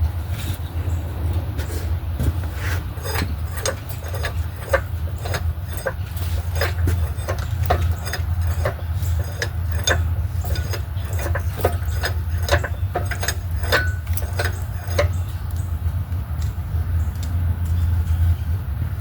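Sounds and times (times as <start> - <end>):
steady low hum: 0.0 - 19.0
metallic clicks of hand tools: 3.0 - 15.7.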